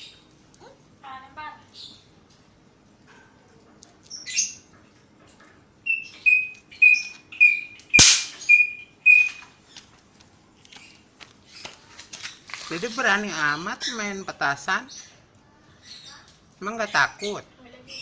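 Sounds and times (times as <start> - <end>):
bird chirping: 5.9 - 9.4
firecracker pop: 8.0 - 8.4.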